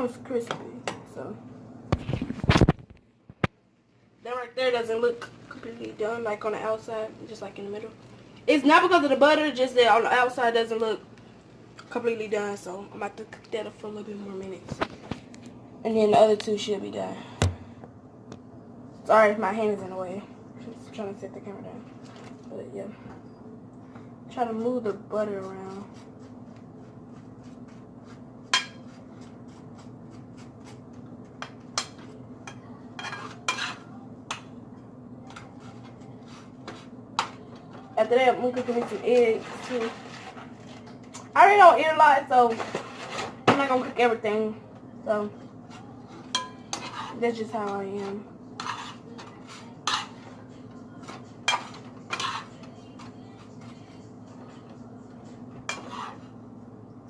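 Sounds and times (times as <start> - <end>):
steady low hum: 0.0 - 57.0
spoon clinking on skillet: 46.3 - 47.0.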